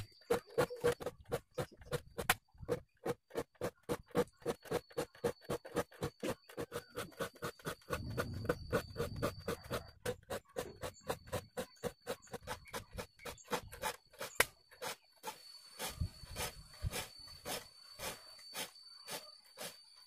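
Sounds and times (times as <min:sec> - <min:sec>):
file rasping on saw teeth: 0:03.0 - 0:15.0.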